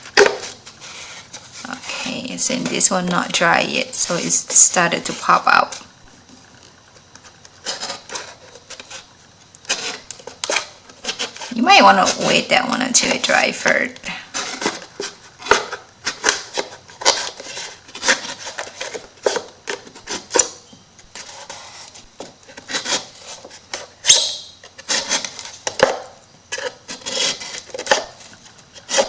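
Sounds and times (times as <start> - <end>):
rubbing and scraping on paper and wood: 0.4 - 5.8, 6.4 - 13.4, 14.1 - 20.4, 21.0 - 24.0, 24.8 - 25.8, 26.5 - 29.0.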